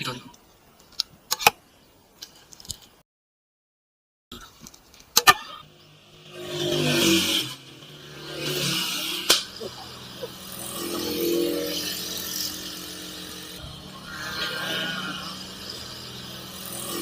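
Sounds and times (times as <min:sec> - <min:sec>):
vehicle engine passing: 0:05.7 - 0:17.0.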